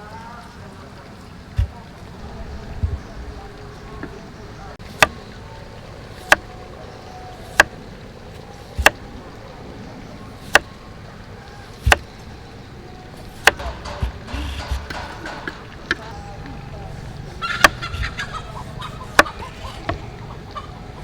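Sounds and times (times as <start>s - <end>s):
knife chopping on cutting board: 7.4s - 7.7s, 8.6s - 9.0s, 11.8s - 12.1s, 13.2s - 15.6s.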